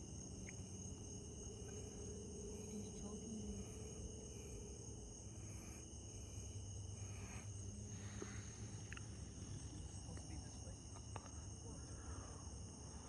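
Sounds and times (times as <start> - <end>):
crickets trilling: 0.0 - 13.0
faint ticks: 8.2 - 9.2.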